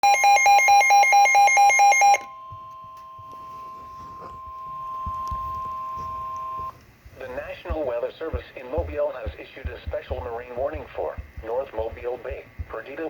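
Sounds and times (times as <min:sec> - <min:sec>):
steady single-pitch alarm tone: 0:00.0 - 0:06.8
two-pitch warbling alarm beeps: 0:00.0 - 0:06.8.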